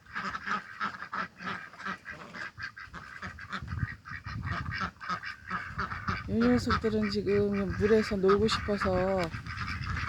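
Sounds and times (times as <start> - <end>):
ducks quacking: 0.0 - 10.0.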